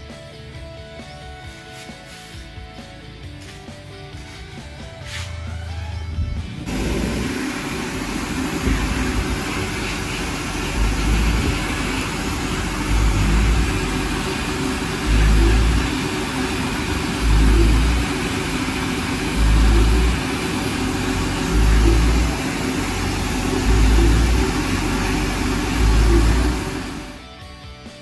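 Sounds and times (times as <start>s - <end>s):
heavy low pulse: 6.6s - 27.2s
sandblaster hissing: 6.7s - 27.2s.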